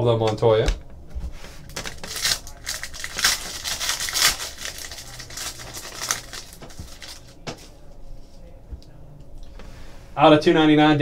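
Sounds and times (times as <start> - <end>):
foil wrapper crinkling and tearing: 1.6 - 7.4.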